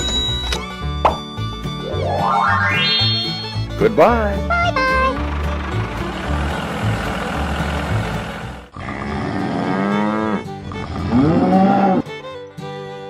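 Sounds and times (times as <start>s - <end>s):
background music: 0.0s - 8.5s
cow mooing: 8.8s - 12.1s.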